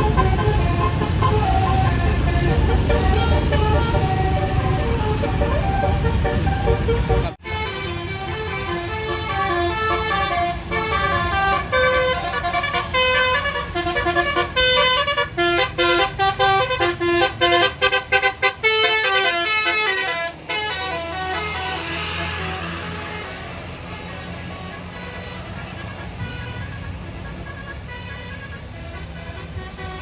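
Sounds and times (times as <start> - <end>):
bus engine rumbling: 0.0 - 30.0
multi-note bus horn melody: 0.0 - 30.0.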